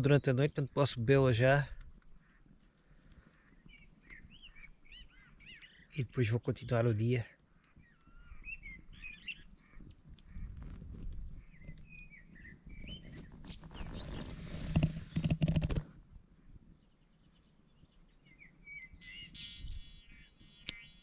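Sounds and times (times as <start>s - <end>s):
small songbirds chirping: 0.0s - 15.4s, 16.7s - 21.0s
rustling and clattering with clicks: 13.1s - 16.0s.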